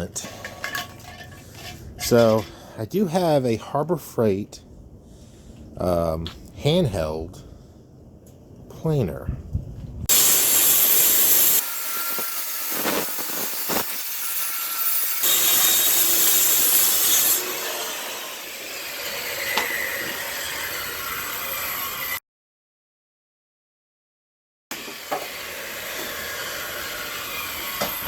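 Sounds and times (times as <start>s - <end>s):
electric planer cutting wood: 10.1s - 22.2s, 24.7s - 28.0s.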